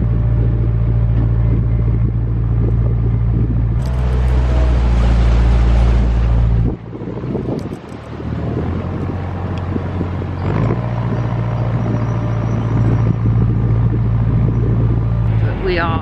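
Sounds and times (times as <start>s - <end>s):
diesel engine humming: 0.0s - 16.0s
loud rushing noise: 3.8s - 8.0s, 15.2s - 16.0s.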